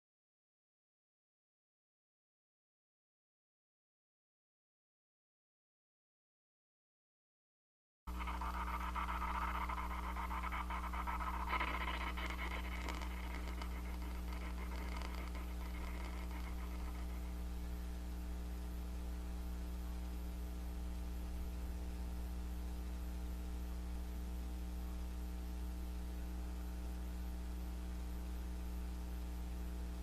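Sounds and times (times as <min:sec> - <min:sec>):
low electrical hum: 0:08.1 - 0:30.0.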